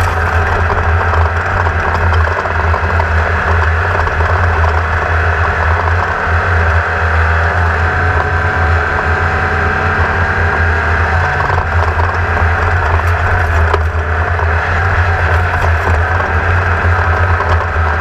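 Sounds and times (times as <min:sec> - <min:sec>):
race car engine droning: 0:00.0 - 0:18.0.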